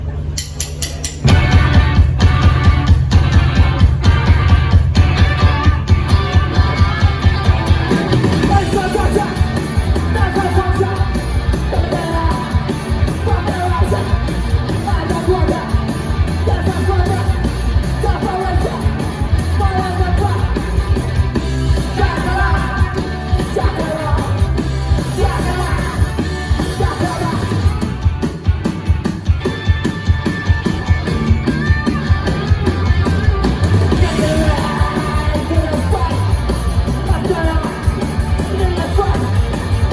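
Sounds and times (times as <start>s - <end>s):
fast drum beat: 0.6s - 39.9s
punk rock band playing live: 1.0s - 39.9s
singer shouting vocals: 5.3s - 20.8s, 21.8s - 28.0s, 30.6s - 39.9s.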